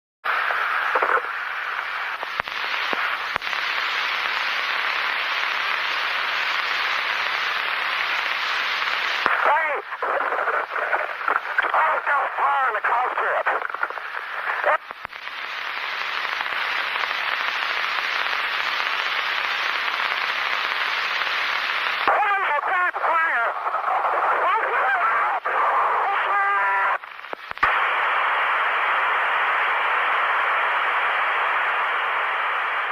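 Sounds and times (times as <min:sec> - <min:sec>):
radio hiss and static: 0:00.2 - 0:32.9
pitched radio burst: 0:00.3 - 0:31.7.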